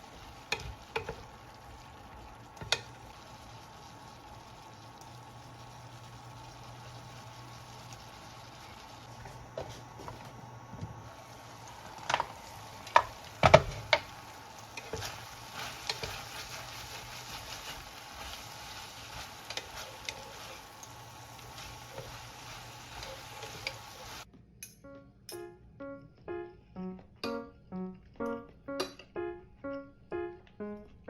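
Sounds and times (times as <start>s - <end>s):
food sizzling in a pan: 0.0s - 24.3s
utensil stirring food: 0.0s - 24.3s.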